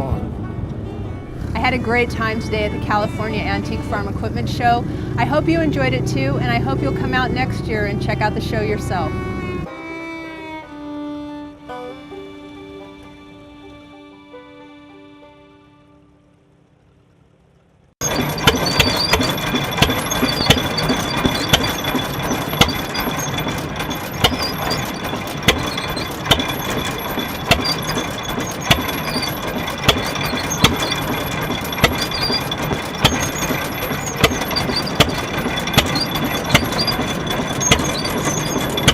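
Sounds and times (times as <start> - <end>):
old engine knocking: 18.0 - 38.9.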